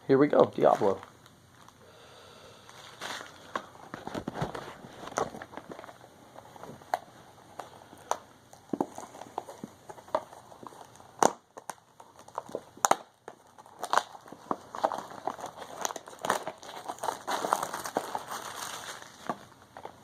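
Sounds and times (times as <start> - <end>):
plastic bag and cardboard crinkling: 0.5 - 1.8, 2.6 - 20.0.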